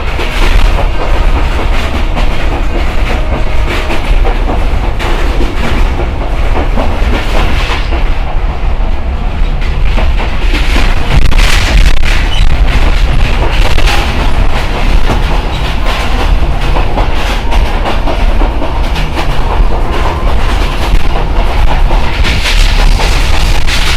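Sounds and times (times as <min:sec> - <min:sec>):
train rumbling on track: 0:00.0 - 0:23.9
wheels clicking over rail joints: 0:12.1 - 0:23.9.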